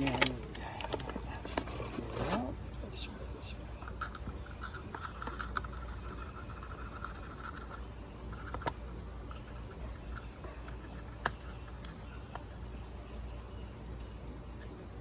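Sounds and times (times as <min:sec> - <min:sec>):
powder scraping and rustling: 0:00.0 - 0:02.6.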